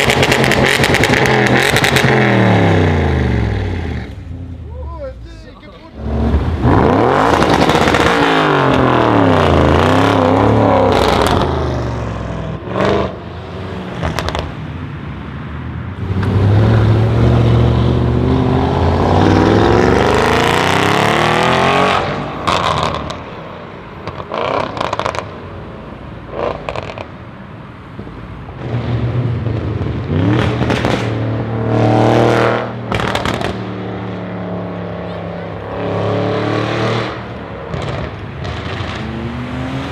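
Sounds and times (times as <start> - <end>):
exhaust crackles and pops: 0.0 - 12.1, 14.0 - 14.6, 24.0 - 25.4, 26.3 - 27.2, 27.9 - 31.6, 32.6 - 34.5, 37.6 - 39.9
car engine accelerating hard: 0.0 - 23.4, 27.7 - 39.9.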